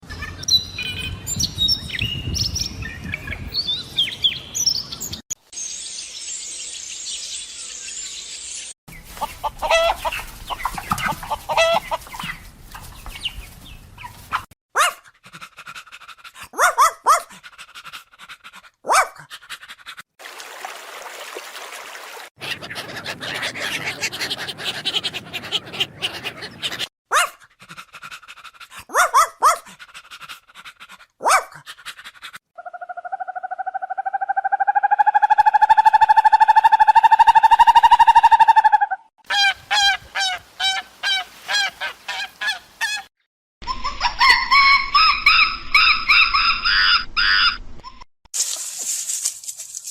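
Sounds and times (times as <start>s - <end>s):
bird chirps: 0.1s - 9.1s.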